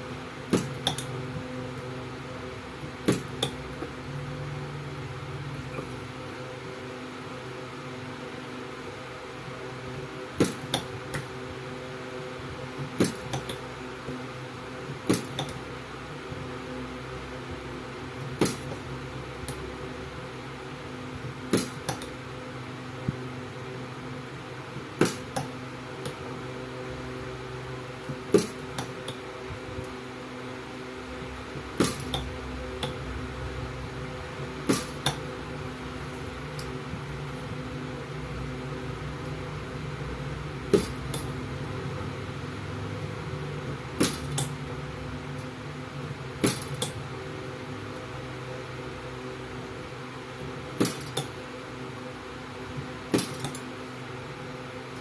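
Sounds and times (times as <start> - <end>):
steady electrical hum: 0.0 - 55.0
spot welder snapping: 18.4 - 18.8, 21.5 - 22.1, 25.0 - 26.2, 28.3 - 29.2, 31.8 - 33.0, 34.7 - 35.2, 44.0 - 44.5, 46.4 - 47.0, 50.8 - 51.3, 53.1 - 53.6.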